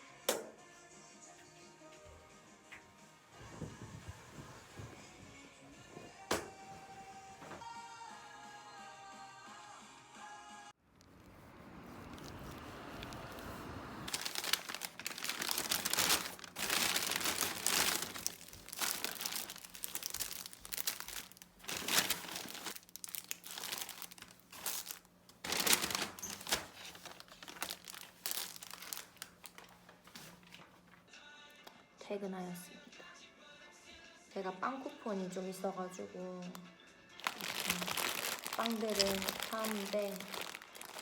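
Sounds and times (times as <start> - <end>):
packaging crinkling and rustling: 11.9 - 31.0, 37.2 - 41.0.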